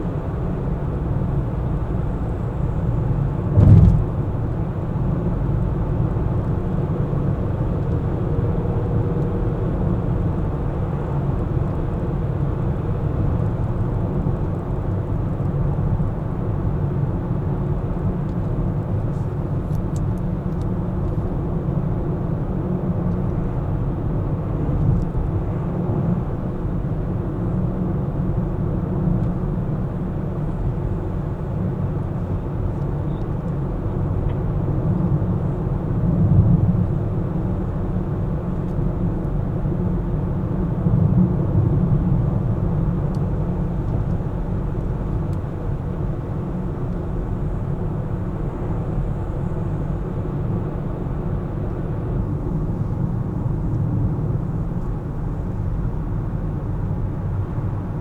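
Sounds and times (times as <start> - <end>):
car driving rumble: 0.9 - 6.5.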